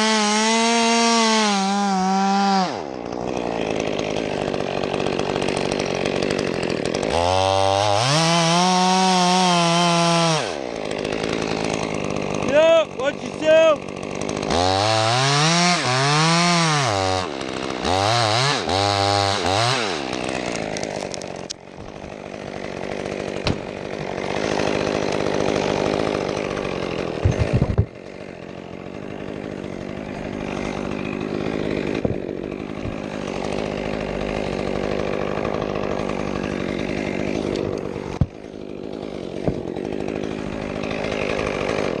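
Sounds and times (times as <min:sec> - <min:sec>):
chainsaw revving: 0:00.0 - 0:42.0
sharp knocks: 0:23.4 - 0:23.7.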